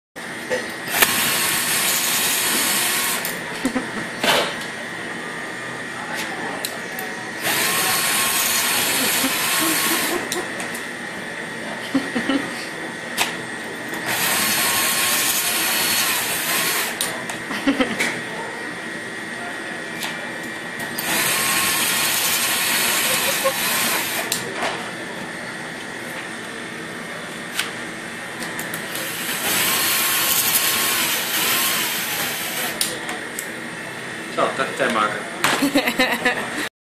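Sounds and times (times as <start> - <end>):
electric drill whining: 0.9 - 3.4, 7.3 - 10.7, 14.0 - 17.2, 20.8 - 24.5, 28.6 - 33.0.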